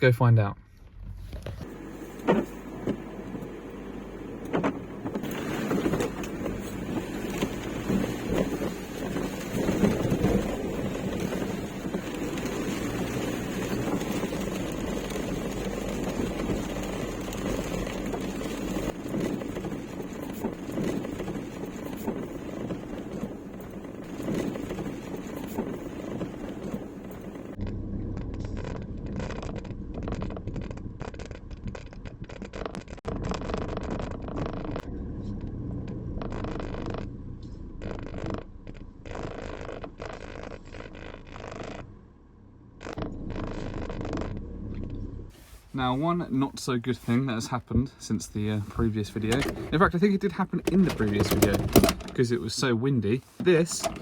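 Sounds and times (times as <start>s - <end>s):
road and engine noise in a van: 0.0s - 54.0s
knocks and clicks: 4.4s - 34.8s, 49.1s - 52.4s, 53.4s - 54.0s.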